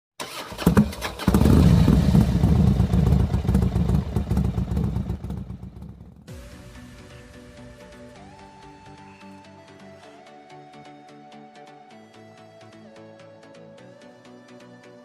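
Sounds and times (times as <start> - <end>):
background music: 6.2 - 15.0.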